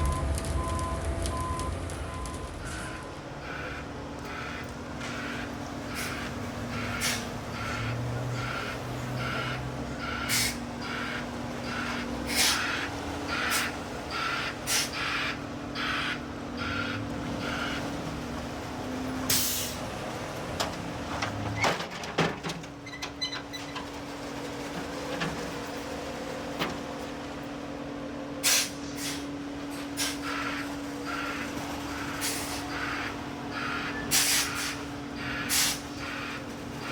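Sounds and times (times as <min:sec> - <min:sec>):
reverse alarm beeping: 0:00.0 - 0:03.2
truck engine running: 0:00.0 - 0:36.9
air brake hisses: 0:07.0 - 0:07.4, 0:10.3 - 0:10.6, 0:19.3 - 0:19.8, 0:28.4 - 0:29.3, 0:30.0 - 0:30.3, 0:34.1 - 0:36.0
clatter of knocks: 0:20.6 - 0:27.0.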